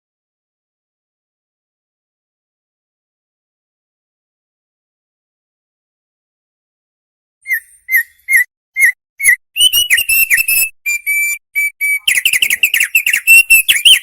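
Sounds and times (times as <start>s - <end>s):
songbird whistling: 7.4s - 14.0s.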